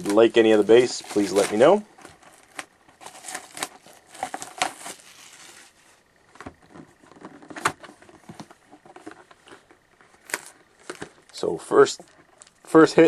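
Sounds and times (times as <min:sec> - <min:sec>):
wrappers crinkling: 0:00.0 - 0:06.0, 0:09.0 - 0:12.8.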